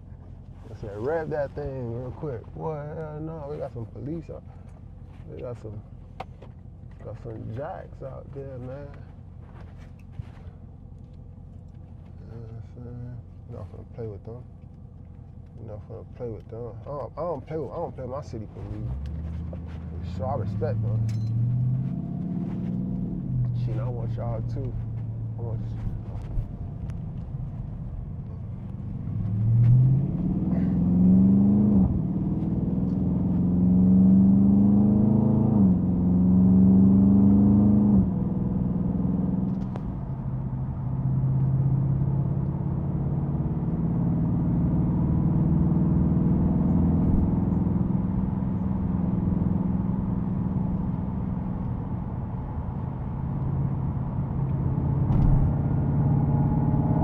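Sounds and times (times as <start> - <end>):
car engine accelerating through gears: 16.8 - 57.0.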